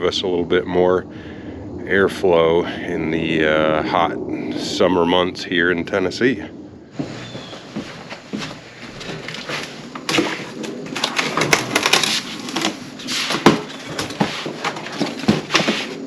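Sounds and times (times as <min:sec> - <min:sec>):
cardboard scraping and rustling: 0:07.0 - 0:16.0.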